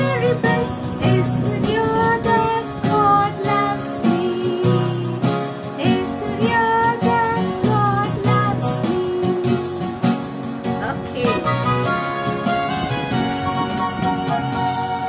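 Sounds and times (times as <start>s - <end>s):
woman singing: 0.0s - 11.6s
strummed acoustic guitar: 0.0s - 15.0s.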